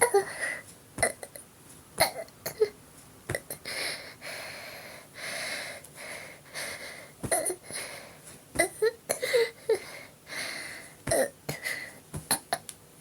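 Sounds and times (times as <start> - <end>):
woman breathing hard with a wheeze: 0.0 - 0.8, 3.5 - 8.4, 9.1 - 12.0.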